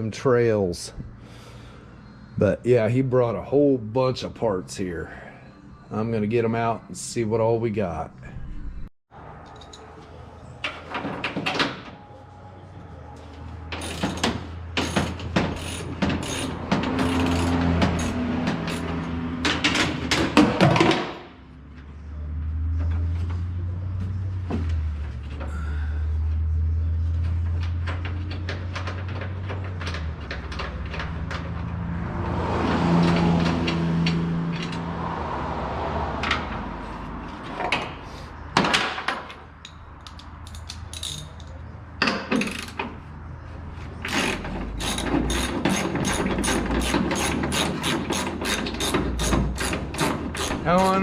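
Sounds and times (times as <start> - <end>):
low hum: 8.1 - 10.5
ratchet wrench clicking: 14.8 - 18.9, 39.6 - 41.5, 44.1 - 50.7.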